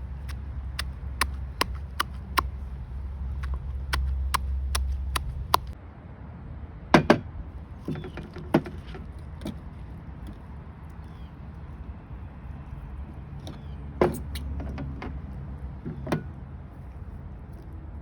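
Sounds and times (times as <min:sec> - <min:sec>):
sharp clicks: 0:03.4 - 0:05.8.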